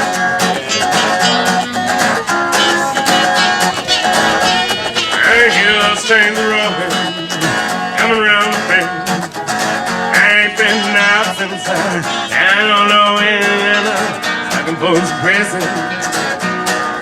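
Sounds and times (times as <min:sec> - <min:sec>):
acoustic guitar strumming: 0:00.0 - 0:17.0
wavering melody: 0:00.4 - 0:09.0.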